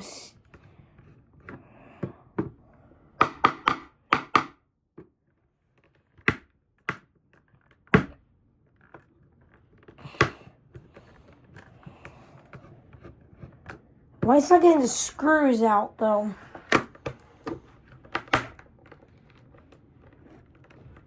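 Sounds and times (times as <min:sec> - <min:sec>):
screwdriver knocking on plastic: 0:03.2 - 0:04.6.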